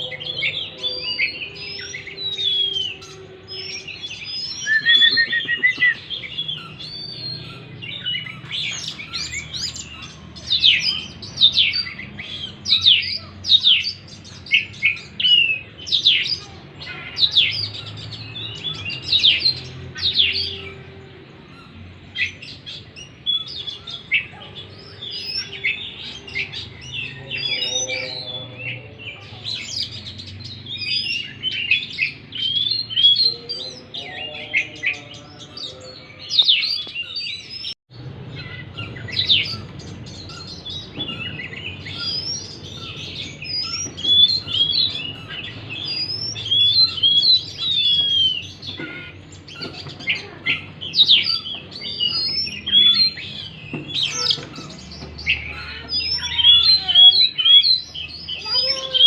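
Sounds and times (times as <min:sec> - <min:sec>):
songbird singing whistles: 0:00.0 - 0:09.9, 0:40.3 - 0:48.8.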